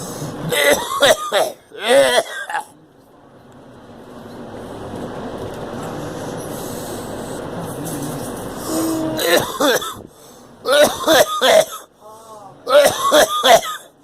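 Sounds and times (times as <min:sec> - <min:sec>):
steady rushing background noise: 0:00.0 - 0:11.9
girl coughing: 0:00.5 - 0:02.7, 0:09.1 - 0:10.0, 0:10.7 - 0:11.9, 0:12.7 - 0:13.9
girl clearing her throat: 0:08.7 - 0:10.0.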